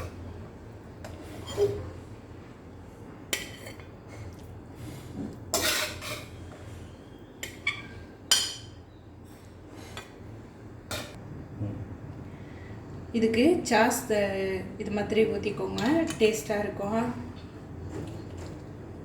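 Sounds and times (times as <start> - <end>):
utensils clinking against dishes: 5.6 - 6.7.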